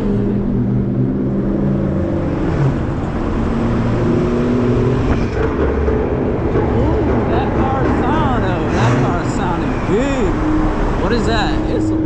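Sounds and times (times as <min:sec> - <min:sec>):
vehicle engine running: 0:02.1 - 0:12.0.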